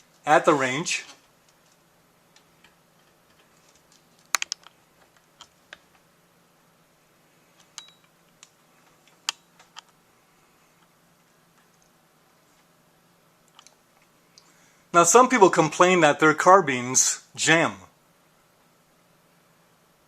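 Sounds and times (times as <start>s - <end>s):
faint steady hum: 0.0s - 20.0s
light clicks and taps: 1.1s - 6.1s.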